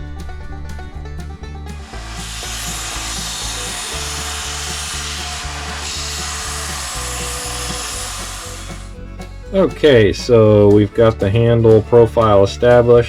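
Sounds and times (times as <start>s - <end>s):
background music: 0.0s - 13.0s
power tool rasping wood: 1.7s - 10.8s.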